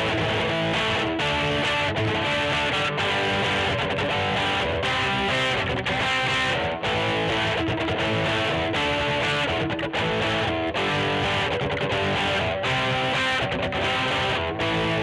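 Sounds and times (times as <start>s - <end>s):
electric guitar playing: 0.0s - 15.0s.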